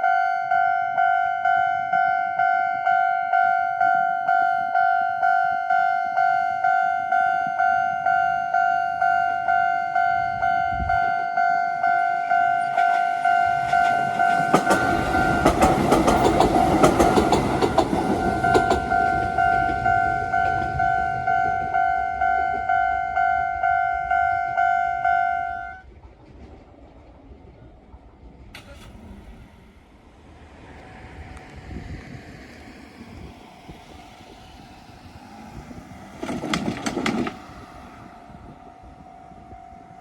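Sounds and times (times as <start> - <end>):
level crossing alarm ringing: 0.0 - 25.8
train wheels clattering over joints: 12.8 - 21.0, 36.1 - 37.6.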